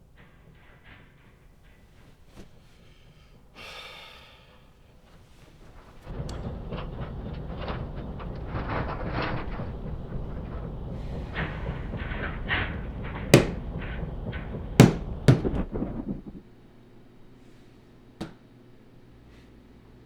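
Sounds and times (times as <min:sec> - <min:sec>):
light clatter: 0:00.0 - 0:03.6, 0:04.5 - 0:16.5
steady low rumble: 0:06.1 - 0:16.5
loud sharp bangs: 0:11.2 - 0:16.4.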